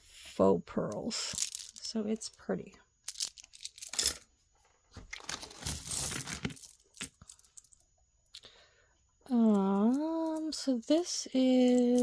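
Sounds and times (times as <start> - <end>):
packaging crinkling and rustling: 5.0 - 6.7.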